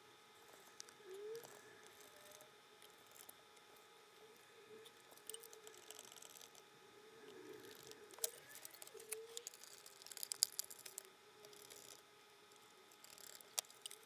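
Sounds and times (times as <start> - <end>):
small plastic parts clicking: 5.1 - 6.6, 7.3 - 14.0.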